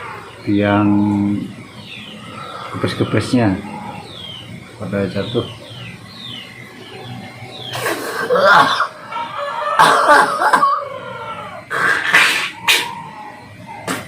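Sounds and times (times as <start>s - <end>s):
person clearing throat: 7.8s - 8.9s, 9.8s - 10.8s
person coughing: 9.8s - 10.7s.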